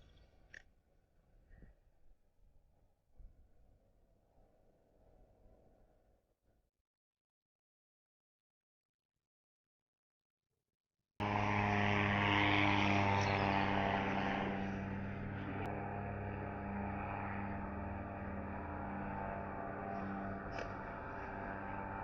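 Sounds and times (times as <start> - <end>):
drone propellers buzzing: 11.2 - 22.0.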